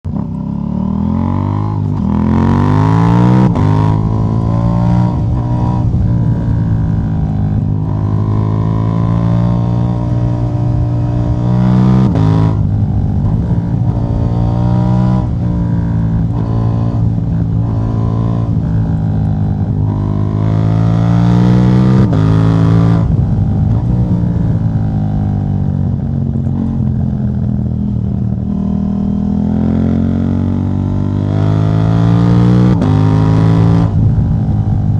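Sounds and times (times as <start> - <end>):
motorcycle engine revving: 0.0 - 34.9.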